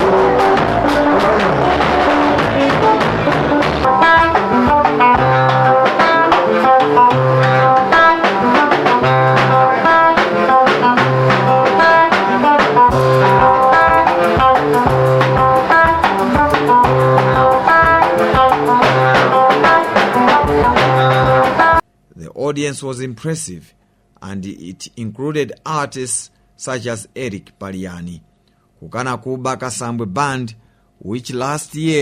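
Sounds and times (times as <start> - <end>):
low bass notes: 0.0 - 21.8
plucked guitar notes: 0.0 - 21.8
steady beat: 0.0 - 21.9.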